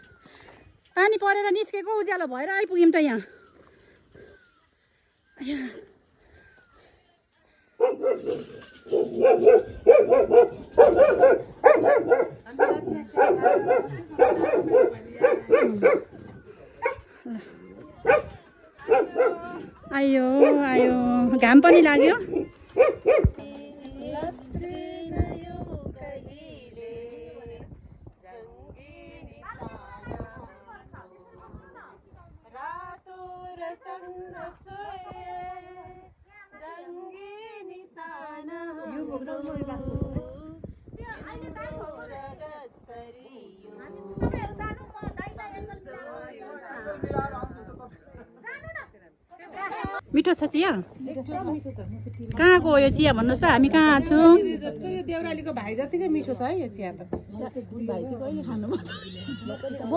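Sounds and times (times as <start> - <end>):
dog barking: 7.8 - 16.2, 16.8 - 17.1, 18.0 - 19.6, 20.4 - 21.0, 21.7 - 23.4.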